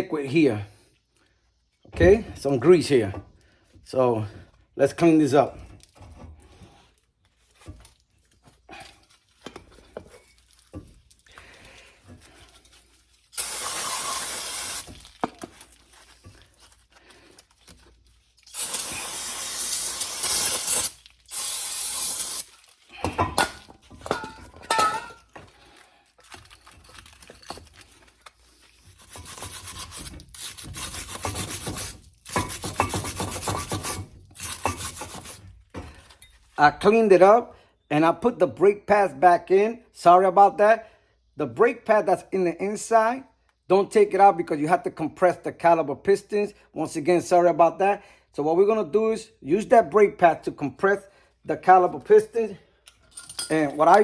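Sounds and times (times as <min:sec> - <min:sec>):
aerosol spray hissing: 0:13.4 - 0:14.9, 0:18.6 - 0:22.5
brush scrubbing metal: 0:28.6 - 0:35.5
metal scrapes and taps: 0:31.2 - 0:36.0.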